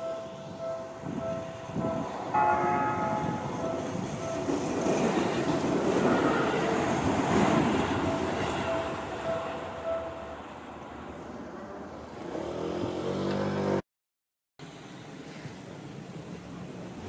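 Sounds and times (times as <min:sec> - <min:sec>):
crossing warning bell ringing: 0:00.0 - 0:11.2
train wheels clattering on rails: 0:01.1 - 0:10.0.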